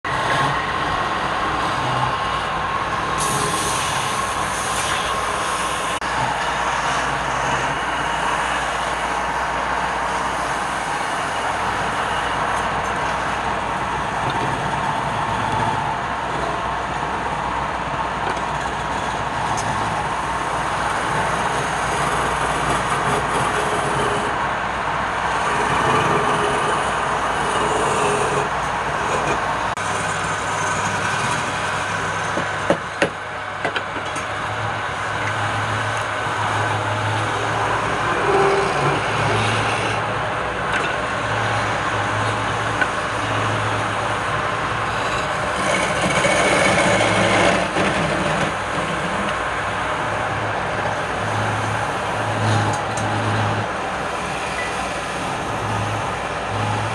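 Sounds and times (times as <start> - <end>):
lathe tool scraping wood: 19.7 - 24.4, 25.3 - 32.1, 36.6 - 40.0, 44.9 - 49.4.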